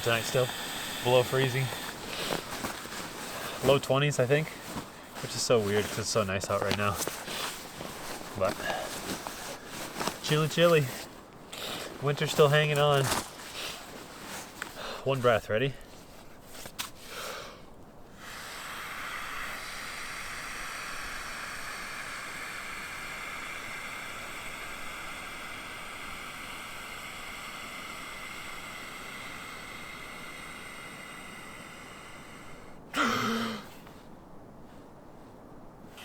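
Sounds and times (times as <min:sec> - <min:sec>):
person blowing out breath: 0:00.0 - 0:03.7, 0:18.2 - 0:33.8
person gasping: 0:18.2 - 0:33.9.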